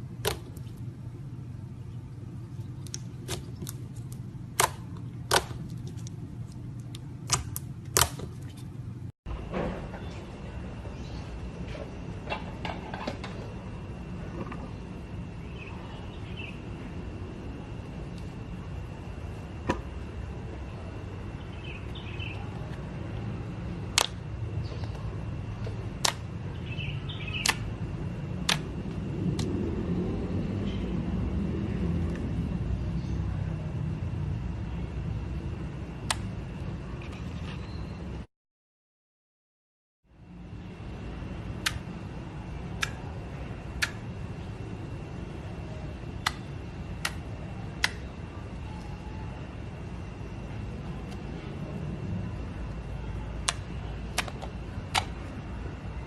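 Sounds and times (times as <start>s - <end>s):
low hum: 0.0s - 38.3s, 40.1s - 56.0s
steady low rumble: 0.0s - 38.3s, 40.1s - 56.0s
sharp clicks: 27.4s - 27.7s, 42.8s - 43.0s, 43.8s - 44.0s, 47.8s - 48.1s, 53.4s - 55.2s.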